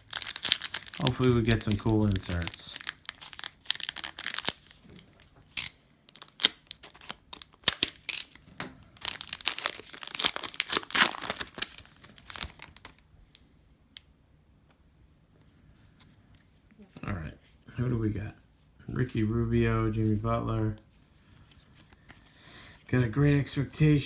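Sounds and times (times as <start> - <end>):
wrapper tearing and crinkling: 0.0 - 13.0.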